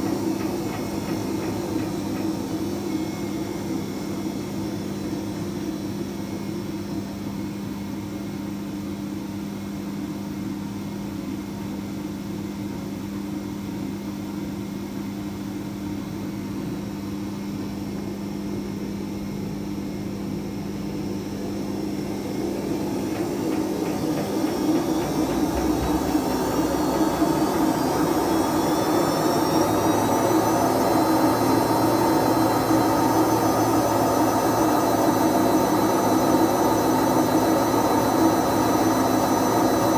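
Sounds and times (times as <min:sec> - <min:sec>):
washing machine running: 0:00.0 - 0:39.9
rising whine of spin: 0:21.5 - 0:39.9.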